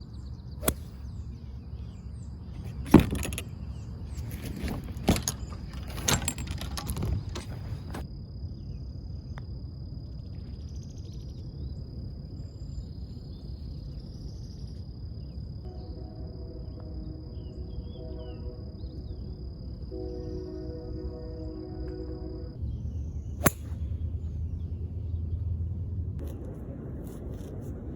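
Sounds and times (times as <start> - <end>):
faint high whine: 8.1 - 24.5
soft music: 15.7 - 19.3.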